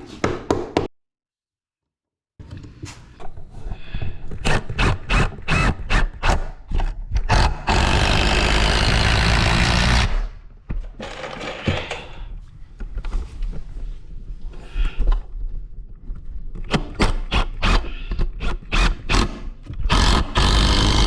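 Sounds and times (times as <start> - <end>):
power tool running: 7.6 - 10.2, 19.9 - 21.0.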